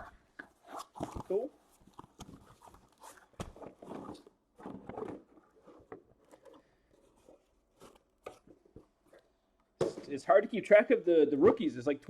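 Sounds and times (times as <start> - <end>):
packaging rustling and scraping: 0.0 - 9.3.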